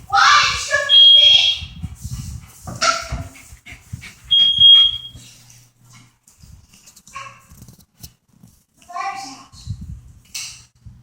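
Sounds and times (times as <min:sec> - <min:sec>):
smoke alarm beep: 0:00.9 - 0:01.7, 0:04.3 - 0:05.2.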